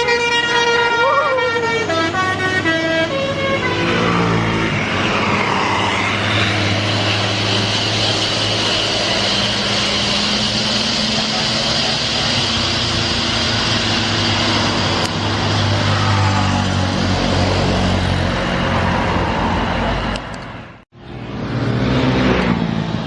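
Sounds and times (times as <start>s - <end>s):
diesel bus engine droning: 0.0s - 23.0s
tyre and road noise: 0.0s - 23.0s
sharp click: 15.0s - 15.2s, 20.1s - 20.6s.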